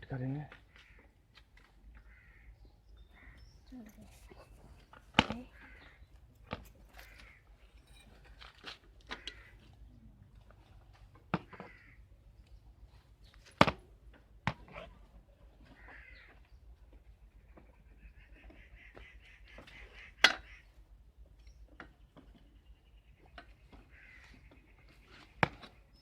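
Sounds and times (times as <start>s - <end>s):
tools and parts clicking and knocking: 6.3s - 9.8s.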